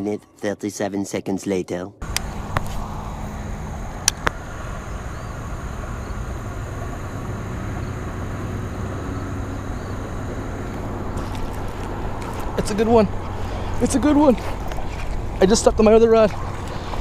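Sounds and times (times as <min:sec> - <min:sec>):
low outdoor rumble: 0:02.0 - 0:17.0
sharp clicks: 0:04.0 - 0:04.4.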